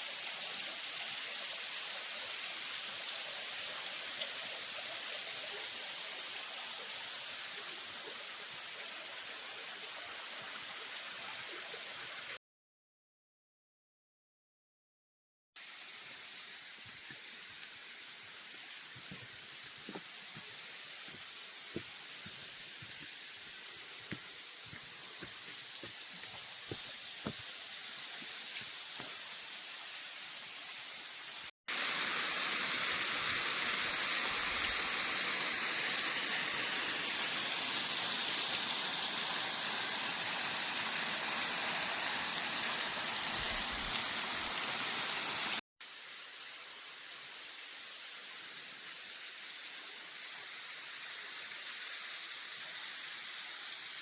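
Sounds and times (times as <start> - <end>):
rush of falling water: 0.0 - 12.4, 15.6 - 54.0.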